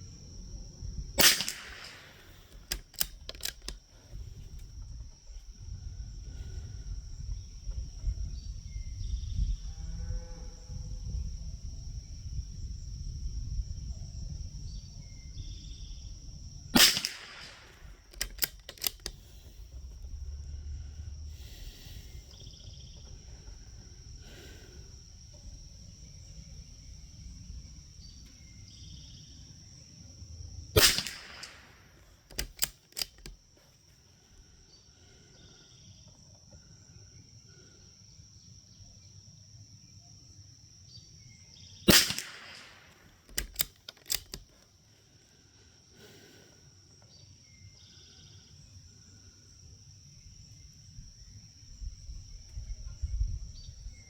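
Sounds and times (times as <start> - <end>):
insects droning: 0.0 - 54.0
rifle bolt clicks: 1.2 - 3.8, 16.8 - 19.4, 30.8 - 33.4, 41.9 - 44.6
rifle shots: 1.2 - 3.8, 16.8 - 19.2, 30.8 - 33.4, 41.9 - 44.4.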